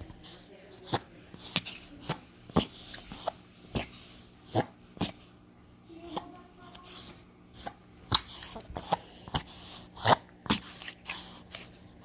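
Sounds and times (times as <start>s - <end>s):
dog sneezing: 7.0s - 11.6s.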